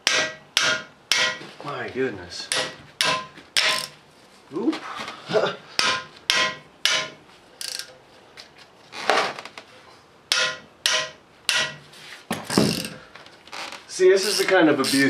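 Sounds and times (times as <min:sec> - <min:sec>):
hammer striking metal ratchet: 0:00.0 - 0:01.4, 0:02.5 - 0:04.0, 0:05.8 - 0:07.9, 0:10.3 - 0:11.8, 0:14.2 - 0:15.0.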